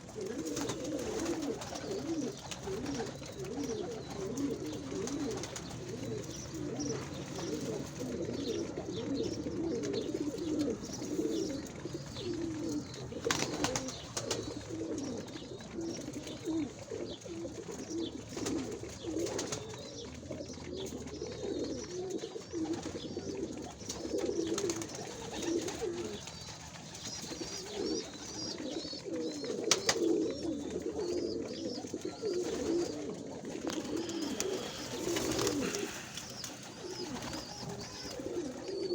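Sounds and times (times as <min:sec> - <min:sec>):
pigeons cooing: 0:00.0 - 0:38.9
faint higher chirps: 0:33.7 - 0:38.8.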